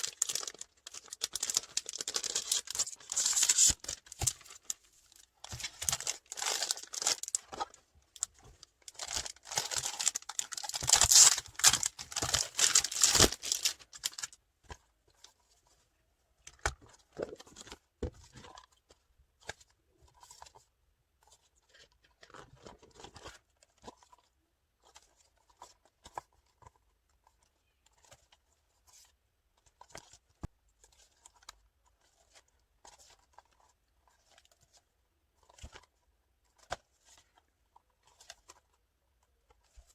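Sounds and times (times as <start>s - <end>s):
packaging torn and crinkled: 0.0s - 14.4s.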